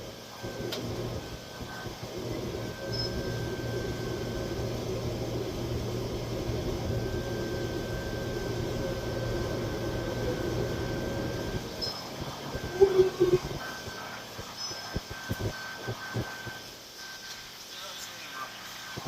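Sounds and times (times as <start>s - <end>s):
wire-feed welder crackling buzz: 0.0s - 17.5s
low hum: 0.3s - 16.6s.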